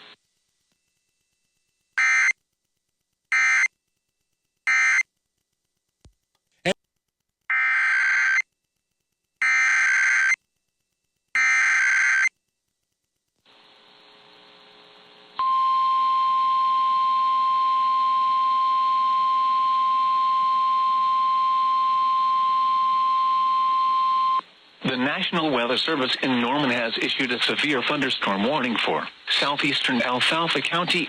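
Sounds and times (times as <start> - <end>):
faint static: 12.3 - 17.0, 17.6 - 31.0.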